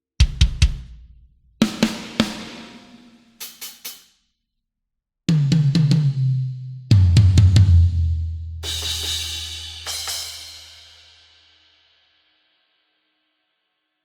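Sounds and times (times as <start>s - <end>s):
tom drum hits: 1.6s - 4.0s.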